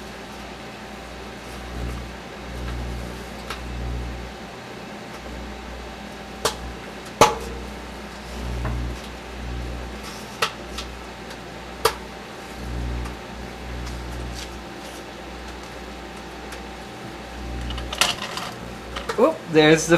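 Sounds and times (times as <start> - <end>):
microwave oven humming: 0.0 - 19.9
electrical arcing snaps: 12.6 - 14.5, 17.4 - 19.2.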